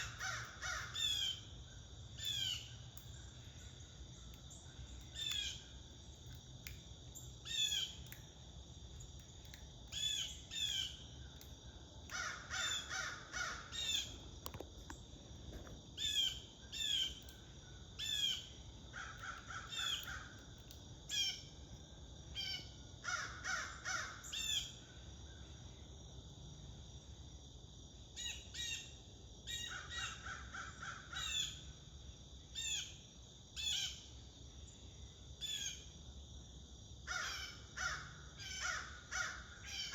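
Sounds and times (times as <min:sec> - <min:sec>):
crows cawing: 0:00.0 - 0:01.2, 0:12.1 - 0:13.9, 0:18.9 - 0:20.4, 0:23.0 - 0:24.3, 0:37.1 - 0:39.9
high insect drone: 0:00.0 - 0:39.9
small birds chirping: 0:02.2 - 0:06.4.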